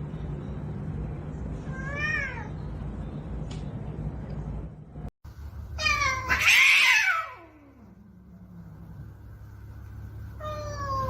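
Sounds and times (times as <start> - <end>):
cat yowling: 5.8 - 8.0, 10.4 - 11.0.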